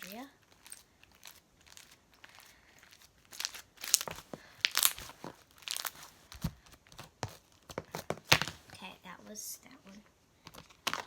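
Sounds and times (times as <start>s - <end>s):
slime squishing: 1.0s - 8.5s
crackly pops: 3.3s - 6.4s.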